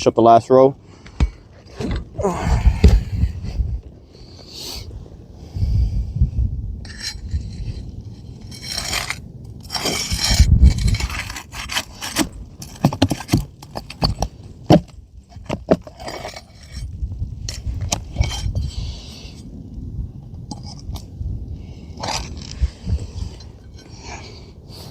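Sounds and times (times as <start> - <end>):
pry bar scraping under shingles: 0.8 - 5.0, 6.8 - 19.6, 20.2 - 24.9.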